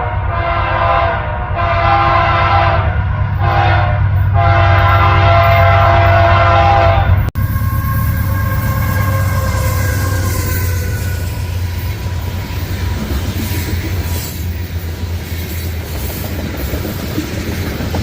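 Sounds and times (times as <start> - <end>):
locomotive air horn blasts: 0.0 - 13.8
train rumbling past: 0.0 - 18.0.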